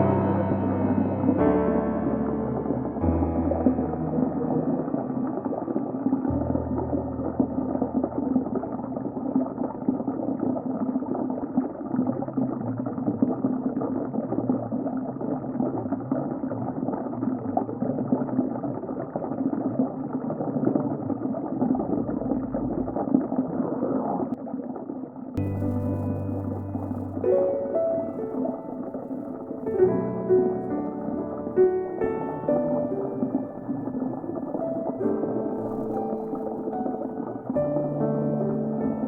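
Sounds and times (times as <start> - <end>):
low hum: 0.0 - 10.1, 25.4 - 39.0
aquarium water bubbling: 0.0 - 39.0.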